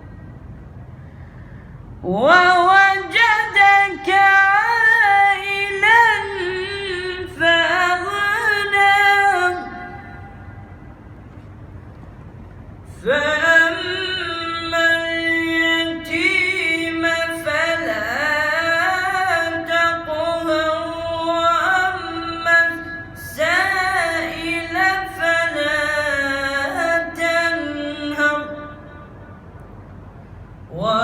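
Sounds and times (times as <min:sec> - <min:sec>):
person reciting melodically: 0:02.0 - 0:10.9, 0:12.9 - 0:29.2, 0:30.7 - 0:31.0.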